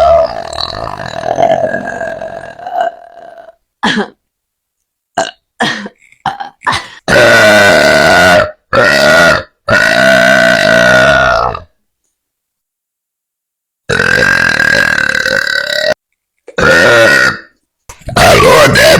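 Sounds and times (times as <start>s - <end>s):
woman burping: 0.0s - 4.2s, 5.2s - 11.6s, 13.9s - 17.5s.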